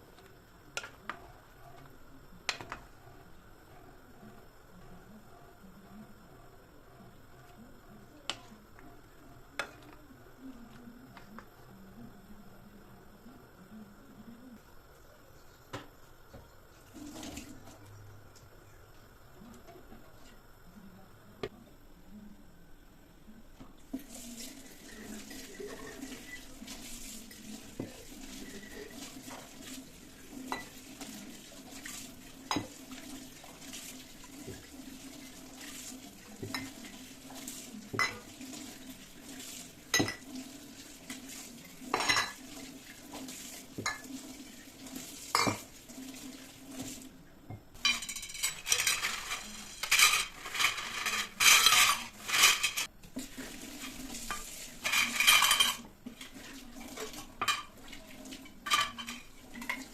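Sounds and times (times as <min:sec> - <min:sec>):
utensils clinking on dishes: 0:39.9 - 0:40.4, 0:41.9 - 0:42.4, 0:47.8 - 0:52.9, 0:53.9 - 0:55.9, 0:56.9 - 0:59.9
clattering and scraping in pan: 0:47.8 - 0:59.9.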